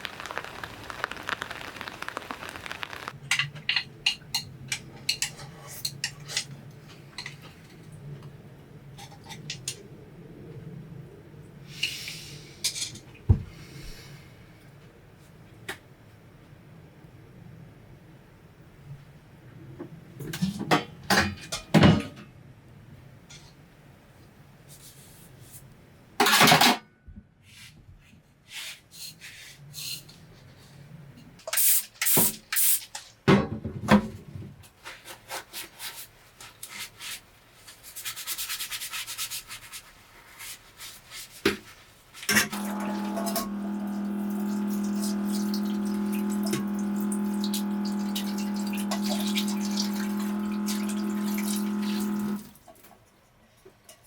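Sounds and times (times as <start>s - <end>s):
steady pitched hum: 42.7s - 52.5s.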